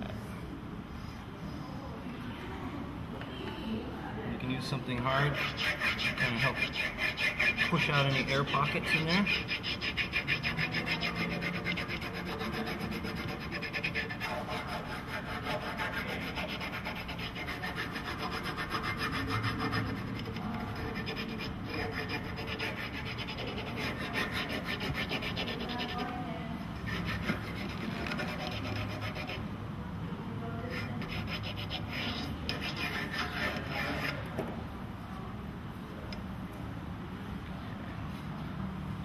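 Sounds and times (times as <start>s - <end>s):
hard object scraping over film: 5.0s - 26.2s, 26.8s - 29.4s, 30.6s - 34.5s.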